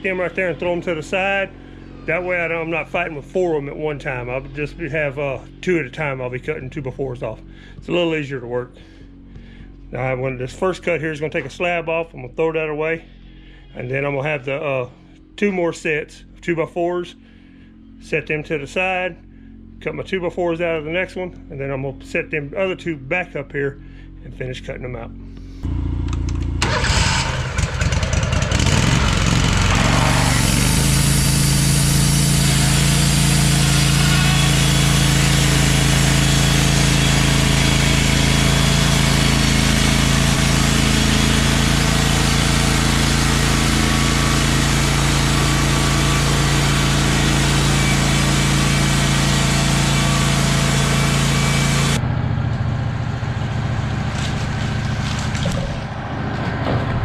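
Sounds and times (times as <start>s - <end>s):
sawmill engine running: 0.0s - 11.6s, 25.6s - 57.0s
band saw cutting log: 26.6s - 52.0s.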